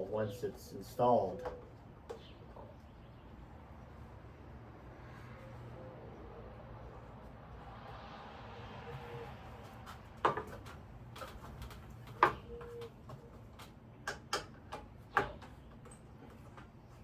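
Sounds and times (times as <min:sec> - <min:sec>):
fan parts clicking and knocking: 0:00.0 - 0:02.7, 0:09.6 - 0:17.0.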